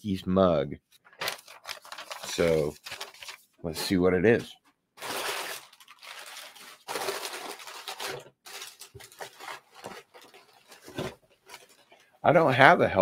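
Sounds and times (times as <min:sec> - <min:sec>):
packaging rustling and crinkling: 0:01.1 - 0:03.6, 0:04.4 - 0:12.0.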